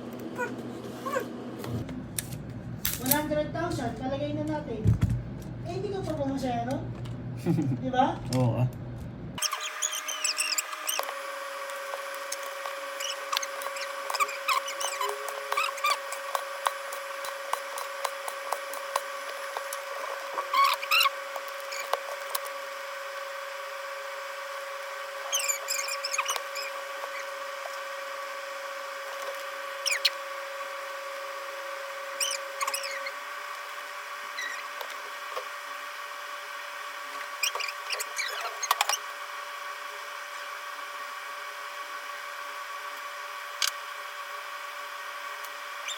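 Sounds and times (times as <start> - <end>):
hand tools clicking and tapping: 13.1 - 19.8.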